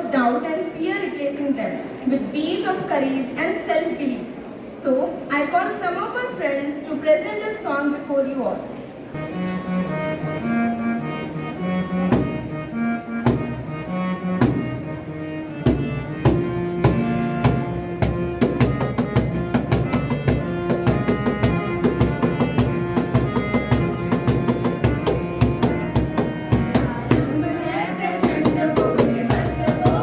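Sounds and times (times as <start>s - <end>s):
held melodic notes: 9.1s - 30.0s
drum-kit beat: 18.0s - 30.0s.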